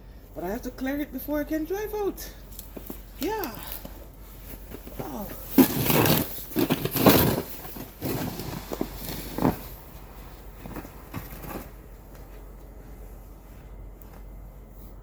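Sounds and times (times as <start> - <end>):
snow shovel crunching and scraping: 4.3 - 11.8.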